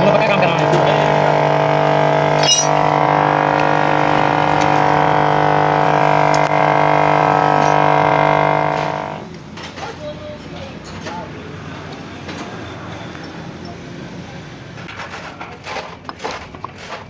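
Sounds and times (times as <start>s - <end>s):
light metallic clink: 2.4s - 2.8s.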